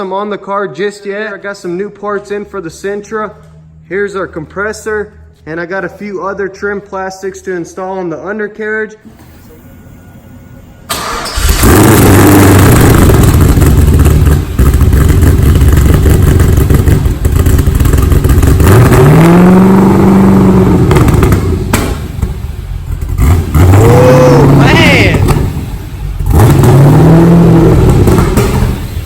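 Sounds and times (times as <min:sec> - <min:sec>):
car engine starting and revving: 0:10.9 - 0:29.0.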